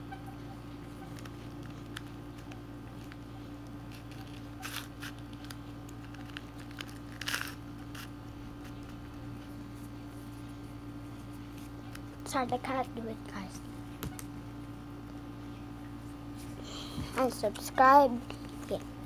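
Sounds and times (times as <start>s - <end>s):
electrical hum: 0.0s - 19.0s
crinkling rustles: 1.0s - 10.5s.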